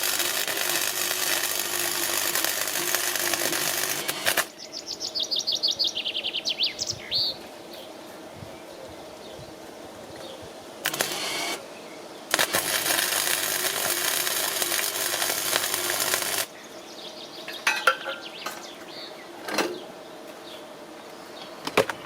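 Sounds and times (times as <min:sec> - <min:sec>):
harsh crackling noise: 0:00.0 - 0:04.5, 0:10.8 - 0:11.6, 0:12.3 - 0:16.5.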